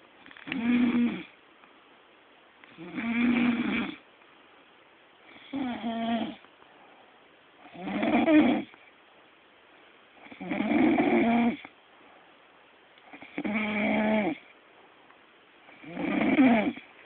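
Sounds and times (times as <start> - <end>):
man snoring: 0.4 - 1.3, 2.8 - 4.0, 5.3 - 6.4, 7.7 - 8.7, 10.2 - 11.7, 13.1 - 14.4, 15.8 - 16.9.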